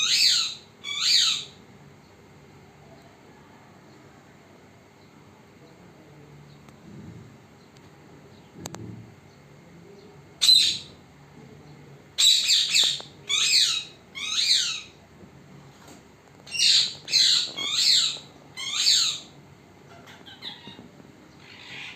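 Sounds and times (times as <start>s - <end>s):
parrot squawking: 0.0s - 1.6s, 10.4s - 10.9s, 12.2s - 15.0s, 16.5s - 19.3s, 19.9s - 20.8s, 21.4s - 21.9s.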